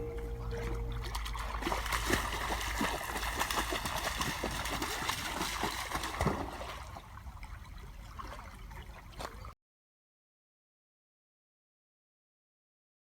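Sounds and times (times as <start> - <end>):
river water trickling and splashing: 0.0 - 9.6.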